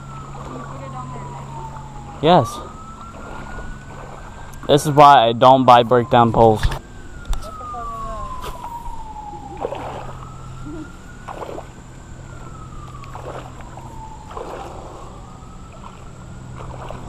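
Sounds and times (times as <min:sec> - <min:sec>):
distant siren wailing: 0:00.0 - 0:17.0.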